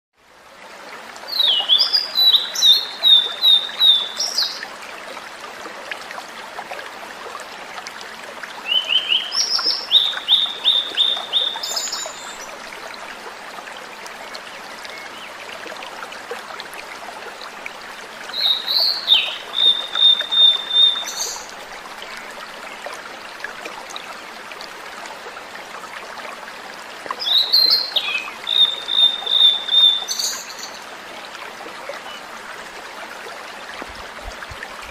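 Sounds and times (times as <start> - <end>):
bird singing whistled phrases: 1.4 - 4.5, 18.4 - 21.4, 27.2 - 30.8.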